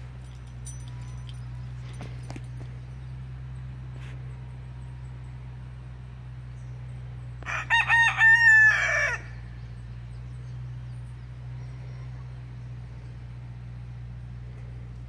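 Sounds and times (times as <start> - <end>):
steady low hum: 0.0 - 15.0
rooster crowing: 7.4 - 9.5.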